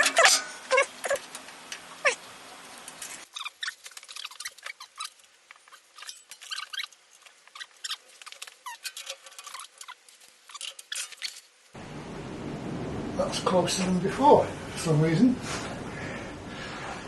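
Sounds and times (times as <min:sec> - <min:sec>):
tools being handled: 0:02.9 - 0:11.6
steady hiss: 0:06.8 - 0:17.0.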